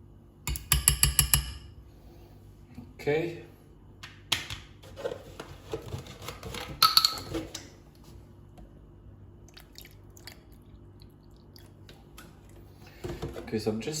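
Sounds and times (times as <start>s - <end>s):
kitchen utensils tapping and clicking: 0.5s - 1.7s, 6.7s - 7.6s.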